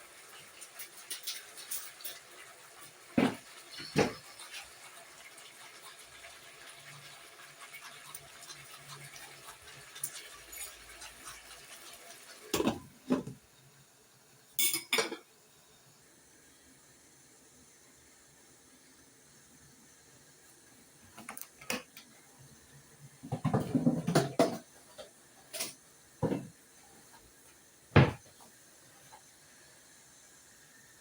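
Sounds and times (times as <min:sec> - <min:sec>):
pots and dishes clinking: 0:00.6 - 0:04.6, 0:07.8 - 0:11.4, 0:12.5 - 0:13.4, 0:14.6 - 0:15.3, 0:23.2 - 0:26.6, 0:28.0 - 0:28.3
sharp clanks of pots: 0:03.1 - 0:04.4, 0:12.5 - 0:13.3, 0:14.6 - 0:15.3, 0:23.3 - 0:24.7, 0:28.0 - 0:28.3.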